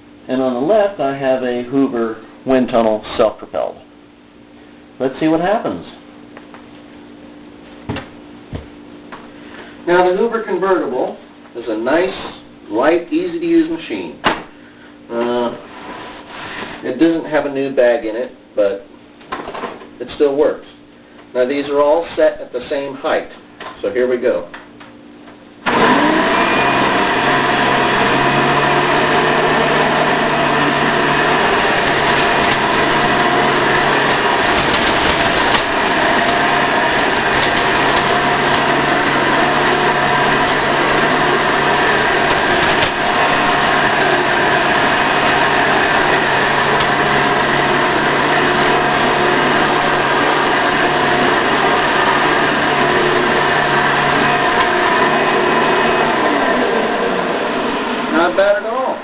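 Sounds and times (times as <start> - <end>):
vacuum cleaner running: 25.6 - 59.0.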